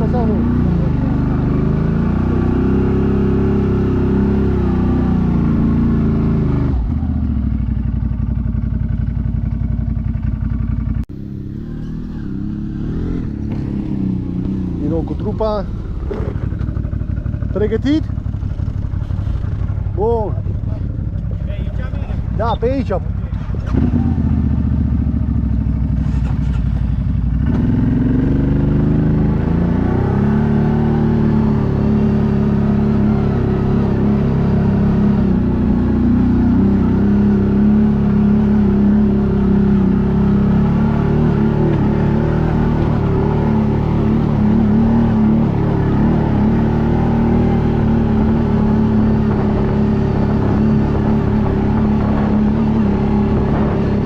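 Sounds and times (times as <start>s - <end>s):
atv engine running under load: 0.0s - 54.0s.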